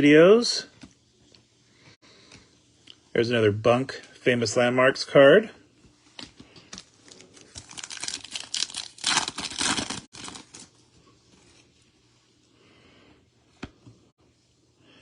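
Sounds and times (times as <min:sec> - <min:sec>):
wrapper tearing and crinkling: 0:07.0 - 0:10.7.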